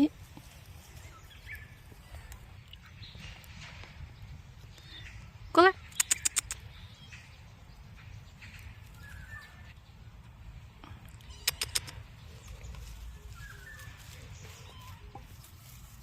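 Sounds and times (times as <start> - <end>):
sharp clicks: 5.8 - 6.7, 11.1 - 12.1.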